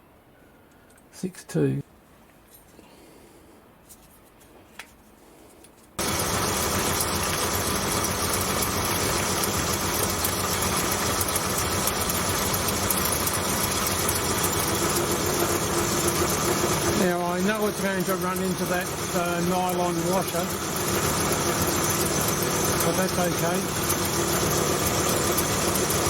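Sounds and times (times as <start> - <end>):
milling machine motor running: 6.0 - 26.0.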